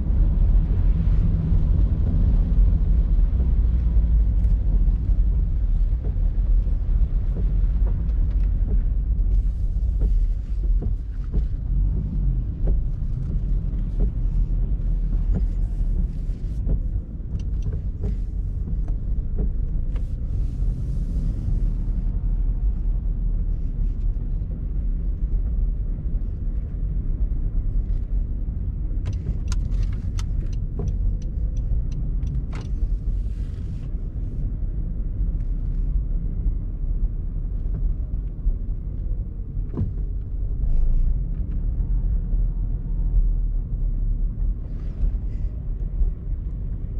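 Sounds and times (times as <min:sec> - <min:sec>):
road and engine rumble: 0:00.0 - 0:46.9
small clicks and taps: 0:05.8 - 0:20.7, 0:29.0 - 0:33.8.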